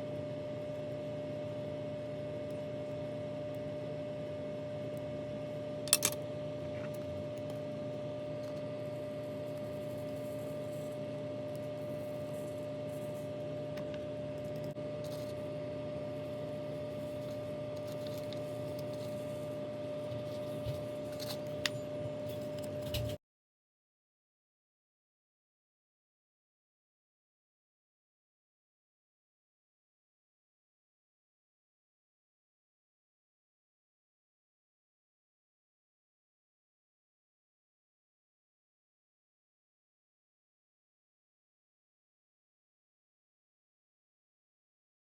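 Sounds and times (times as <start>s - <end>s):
steady room hum: 0.0s - 23.2s.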